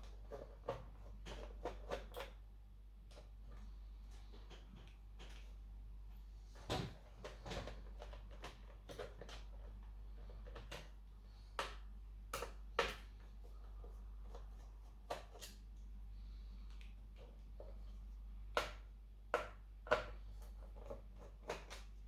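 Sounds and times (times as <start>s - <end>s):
clicks and knocks of plastic parts: 0.0s - 2.4s, 6.6s - 13.3s, 18.5s - 21.9s
steady low hum: 8.7s - 22.0s.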